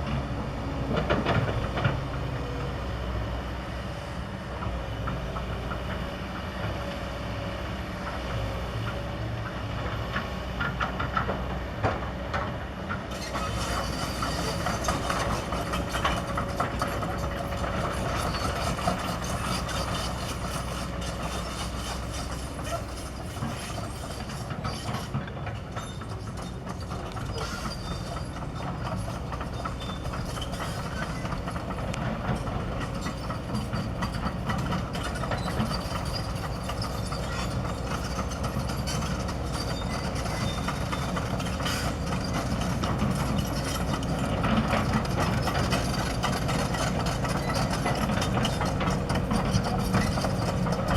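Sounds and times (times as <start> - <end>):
excavator diesel engine: 0.0 - 50.9
metallic clanks and scraping: 13.1 - 50.9.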